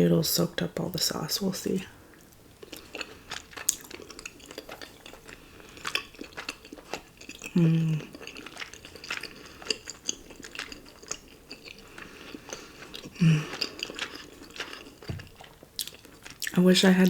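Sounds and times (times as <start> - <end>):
wet chewing and mouth smacks: 2.1 - 16.6
person humming: 7.5 - 8.1, 13.2 - 13.5.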